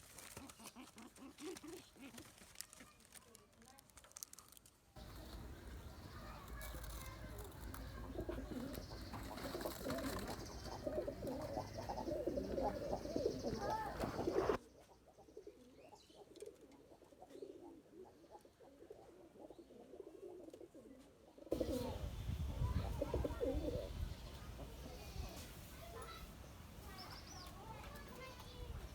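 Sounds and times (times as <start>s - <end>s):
pigeons cooing: 5.0s - 25.3s.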